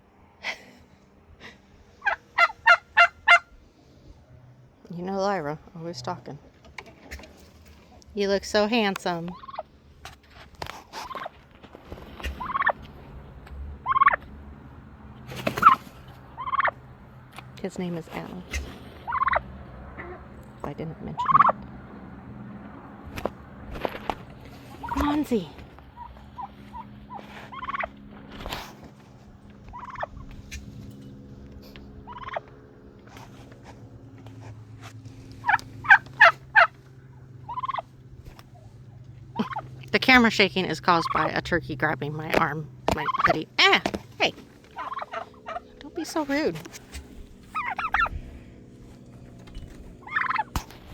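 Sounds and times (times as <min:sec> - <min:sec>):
turkey gobbling: 0:02.0 - 0:03.5, 0:09.3 - 0:09.7, 0:10.9 - 0:11.4, 0:12.0 - 0:12.9, 0:13.8 - 0:14.2, 0:15.4 - 0:16.8, 0:18.4 - 0:20.2, 0:21.2 - 0:21.6, 0:24.3 - 0:25.2, 0:25.9 - 0:28.0, 0:29.7 - 0:30.6, 0:32.1 - 0:32.5, 0:35.3 - 0:39.9, 0:40.9 - 0:41.4, 0:42.3 - 0:43.9, 0:44.7 - 0:46.2, 0:46.8 - 0:48.1, 0:49.5 - 0:50.8.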